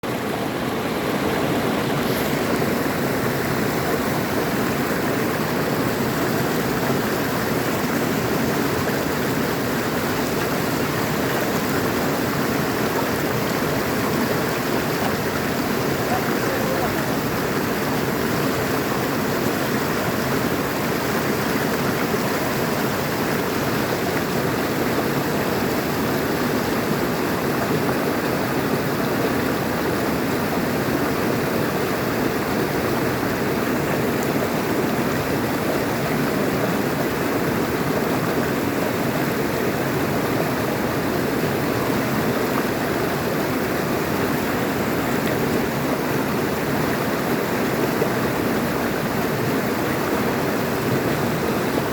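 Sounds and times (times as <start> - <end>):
stream flowing over stones: 0.0 - 51.9.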